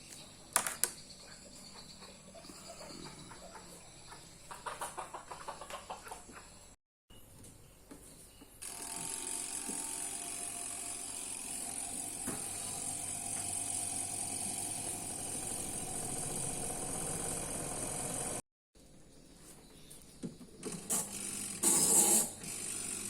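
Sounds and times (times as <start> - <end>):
spin-dryer motor whining: 8.6 - 18.4.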